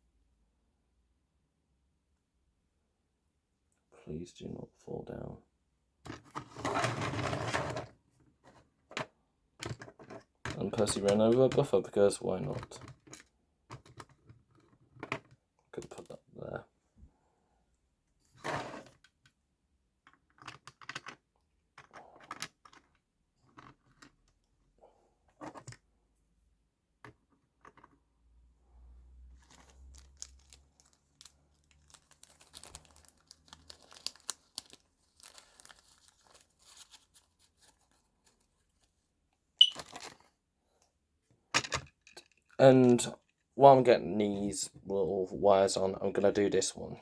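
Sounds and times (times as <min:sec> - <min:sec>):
plastic parts clicking and rustling: 0:08.9 - 0:11.8, 0:12.4 - 0:16.2, 0:20.0 - 0:24.5, 0:25.3 - 0:25.9, 0:27.0 - 0:28.0, 0:29.4 - 0:38.5, 0:39.6 - 0:40.3, 0:41.5 - 0:43.5.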